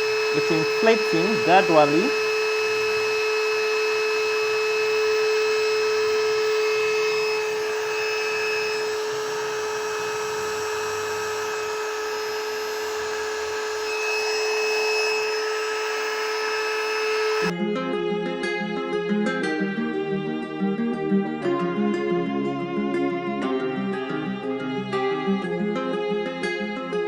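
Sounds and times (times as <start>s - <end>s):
electric air pump whining: 0.0s - 17.6s.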